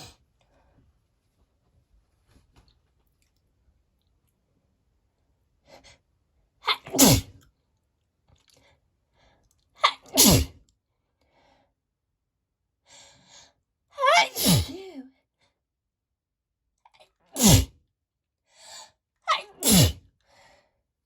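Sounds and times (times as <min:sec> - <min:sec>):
woman sneezing: 0:06.7 - 0:07.4, 0:09.8 - 0:10.6, 0:14.0 - 0:15.1, 0:17.4 - 0:17.7, 0:19.3 - 0:20.0.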